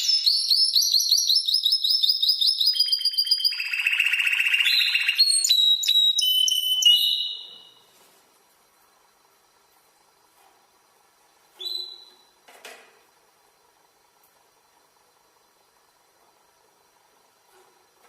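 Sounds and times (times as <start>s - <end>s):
canary singing trills: 0.0s - 7.8s, 11.6s - 12.3s.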